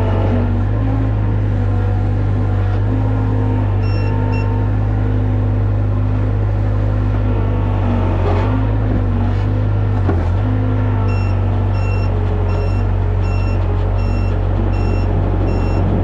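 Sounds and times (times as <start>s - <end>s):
skid loader engine running: 0.0s - 16.0s
short electronic beeps: 3.8s - 4.5s, 11.1s - 15.9s.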